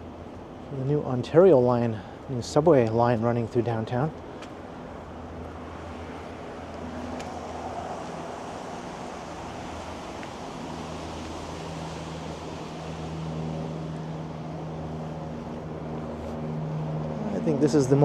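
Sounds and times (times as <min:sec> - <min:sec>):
cars passing: 0:00.0 - 0:18.0
low engine hum: 0:00.0 - 0:18.0.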